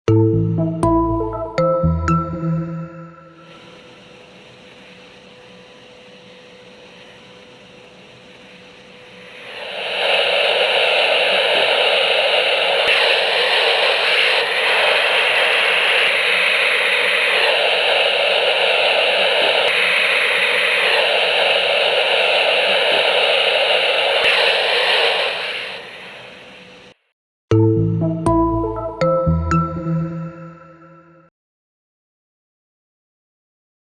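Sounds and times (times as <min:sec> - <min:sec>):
compressed air leak hiss: 0:09.3 - 0:26.6.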